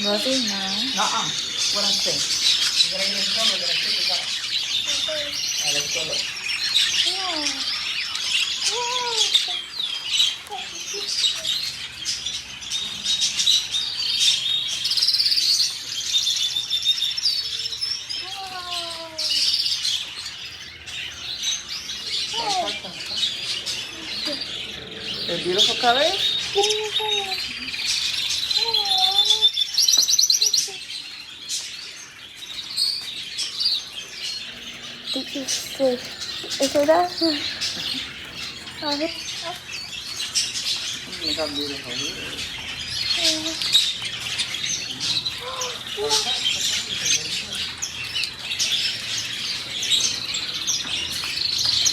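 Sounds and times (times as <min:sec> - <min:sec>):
parrots chirping: 0:00.0 - 0:51.9.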